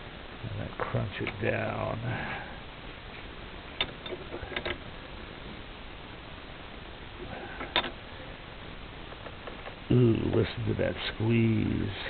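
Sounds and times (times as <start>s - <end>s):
vise clicks and knocks: 3.8s - 4.9s, 7.6s - 8.0s, 9.1s - 10.4s.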